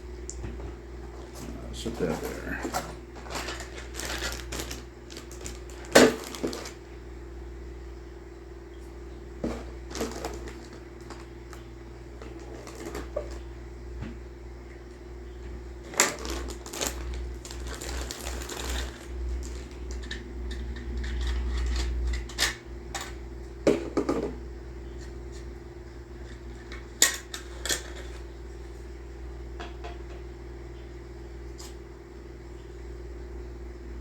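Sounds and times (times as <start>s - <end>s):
steady low hum: 0.0s - 34.0s
packaging rustling: 1.1s - 6.8s, 9.4s - 11.6s, 12.3s - 13.4s, 15.8s - 20.2s.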